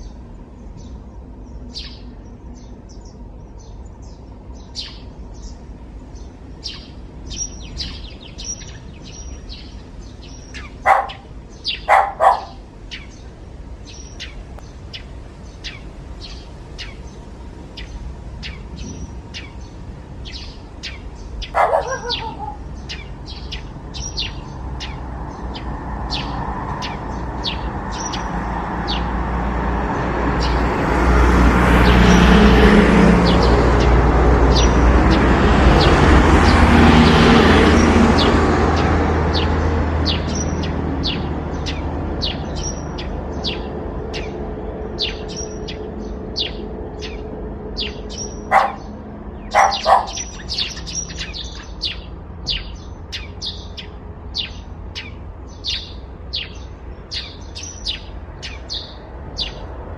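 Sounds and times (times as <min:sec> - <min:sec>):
birds chirping: 0:00.0 - 0:59.9
vehicle passing: 0:00.8 - 0:59.9
dog barking: 0:10.8 - 0:12.6, 0:21.5 - 0:22.7, 0:48.4 - 0:48.9, 0:49.5 - 0:50.4.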